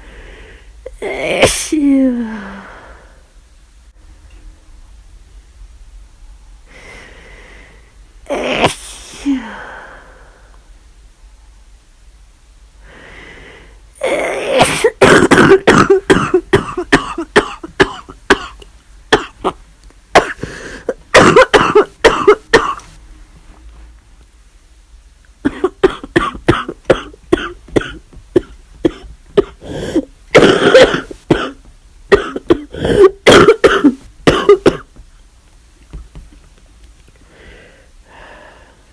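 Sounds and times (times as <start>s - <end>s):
person coughing and sneezing fits: 14.0s - 22.9s, 25.5s - 35.0s.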